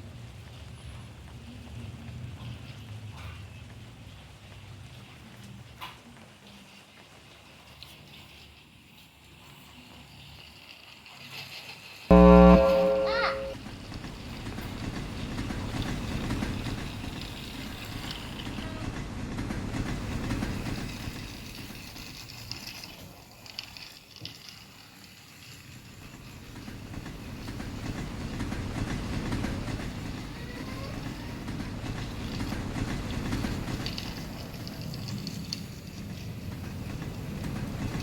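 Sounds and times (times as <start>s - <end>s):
toy train motor whirr: 7.6s - 13.5s, 20.3s - 38.0s.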